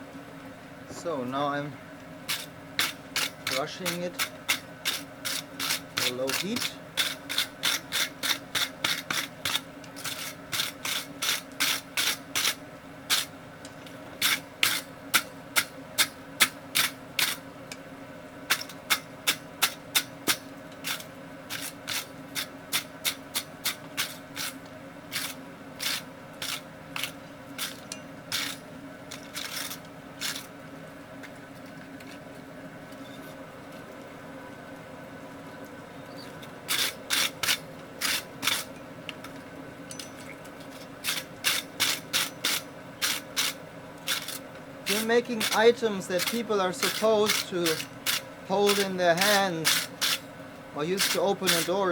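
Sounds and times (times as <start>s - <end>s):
wire brush scrubbing steel: 2.3s - 13.3s, 19.3s - 30.5s, 36.7s - 38.7s, 41.0s - 50.2s, 50.8s - 51.9s.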